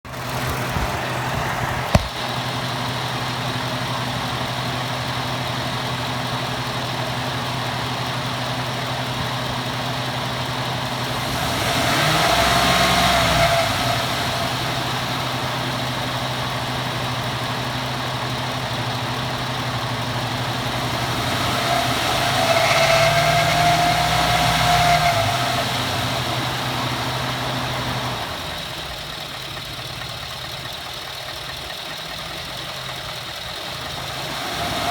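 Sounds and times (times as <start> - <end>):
truck engine idling and revving: 0.0 - 34.9
sharp engine knock: 1.9 - 2.3
high squealing tone: 20.8 - 25.7.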